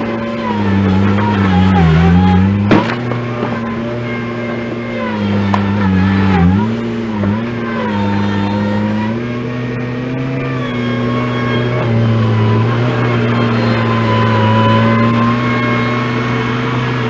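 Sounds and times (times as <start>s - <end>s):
earthmover engine running: 0.0s - 17.0s.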